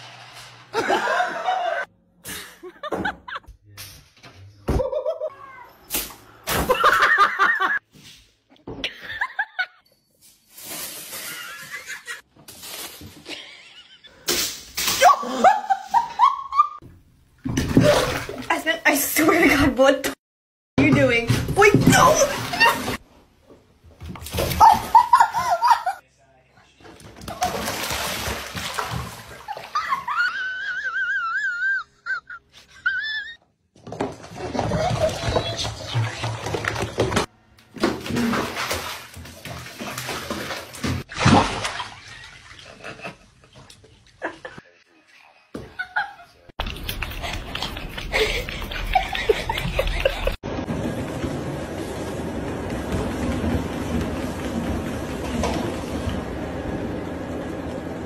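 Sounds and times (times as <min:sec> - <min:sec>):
people laughing: 0:00.7 - 0:03.5, 0:06.7 - 0:07.8, 0:24.6 - 0:26.0, 0:45.6 - 0:50.4
water splashing and sloshing: 0:17.4 - 0:19.3, 0:20.8 - 0:23.0, 0:26.8 - 0:30.4, 0:33.8 - 0:44.2, 0:46.6 - 0:58.0.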